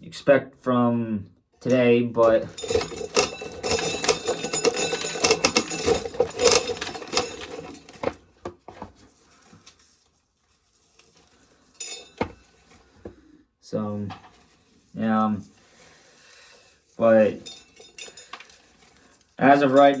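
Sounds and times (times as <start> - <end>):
corn kernels rattling and clicking: 1.6 - 8.3, 15.8 - 20.0.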